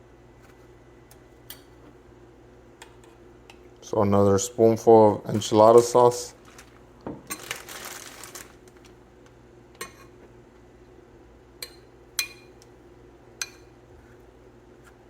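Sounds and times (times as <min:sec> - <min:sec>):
spoon clinking against bowl: 0:11.6 - 0:12.5, 0:13.4 - 0:13.7.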